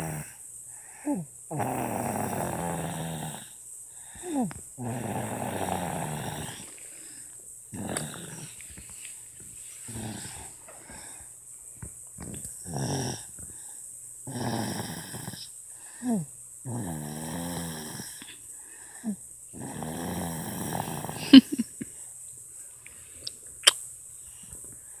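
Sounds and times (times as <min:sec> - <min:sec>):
baby snoring: 0:00.0 - 0:00.4, 0:01.1 - 0:06.7, 0:07.7 - 0:08.6, 0:09.9 - 0:11.2, 0:12.6 - 0:13.4, 0:14.3 - 0:18.3, 0:19.0 - 0:21.4.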